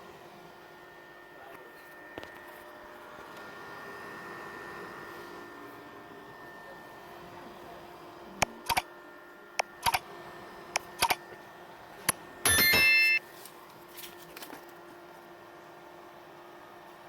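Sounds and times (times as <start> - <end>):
electric fan humming: 0.0 - 16.8
sharp clicks: 8.6 - 8.8, 9.8 - 10.0, 10.8 - 11.2
loud ringing tone: 12.4 - 13.3.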